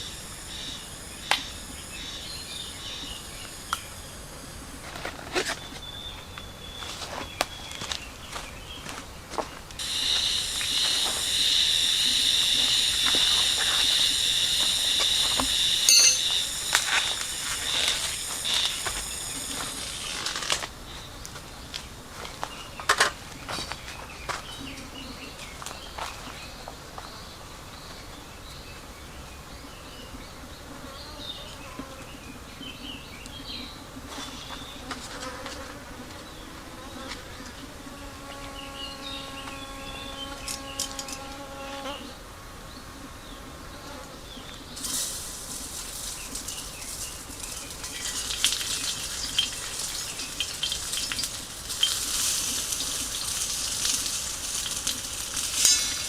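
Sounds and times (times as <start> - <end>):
food sizzling in frying pan: 0.0 - 5.1, 9.8 - 20.5, 44.8 - 56.0
insect buzzing: 0.0 - 5.7, 9.8 - 20.6, 34.1 - 42.2, 44.8 - 56.0.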